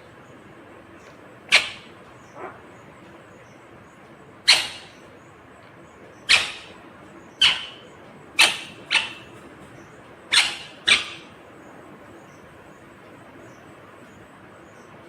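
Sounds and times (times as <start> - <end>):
parrot high-pitched calls: 1.4 - 2.8, 4.4 - 5.1, 6.2 - 9.4, 10.3 - 11.4.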